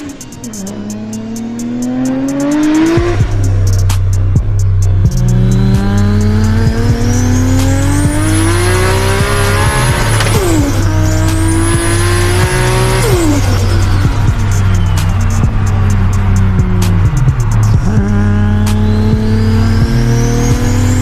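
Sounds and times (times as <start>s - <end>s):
hi-hat ticks: 0.0s - 6.3s
car engine accelerating hard: 0.0s - 21.0s
heavy bass line: 0.0s - 21.0s
turbo whistle: 13.0s - 16.2s.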